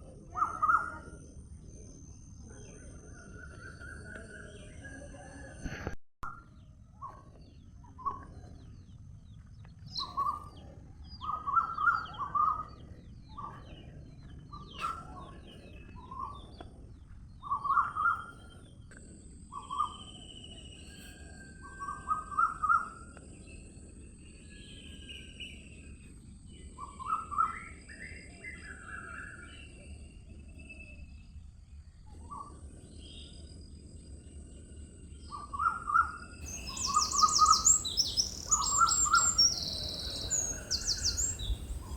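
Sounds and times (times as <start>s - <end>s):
songbirds chirping: 0.7s - 5.7s, 6.5s - 21.4s, 36.4s - 41.9s
low background hiss: 36.4s - 41.9s.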